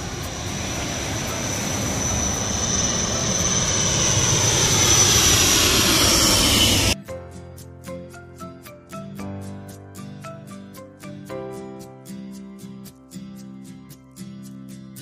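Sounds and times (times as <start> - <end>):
jet aircraft roar with whine: 0.0 - 7.0.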